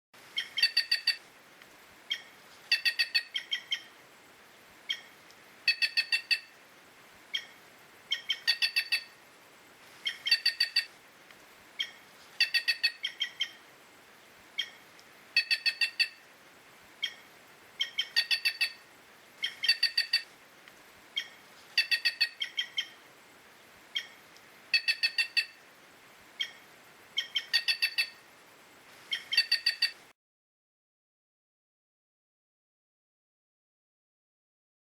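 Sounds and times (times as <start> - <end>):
jay calling: 0.4 - 1.2, 2.1 - 4.0, 4.9 - 6.6, 7.3 - 9.2, 10.0 - 10.9, 11.8 - 13.6, 14.6 - 16.3, 17.0 - 20.3, 21.2 - 23.0, 23.9 - 25.6, 27.2 - 28.2, 29.1 - 30.0.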